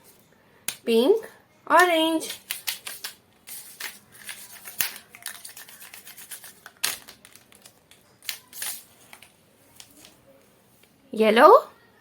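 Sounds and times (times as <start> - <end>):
marker scratching on paper: 2.3 - 6.6.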